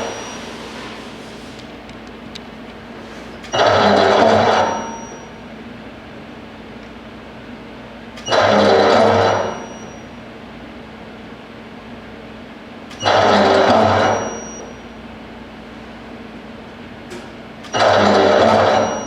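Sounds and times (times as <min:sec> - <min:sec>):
machine running in cycles: 0:00.0 - 0:05.5, 0:08.1 - 0:10.2, 0:12.9 - 0:14.9, 0:16.8 - 0:19.0
steady motor hum: 0:00.0 - 0:19.0.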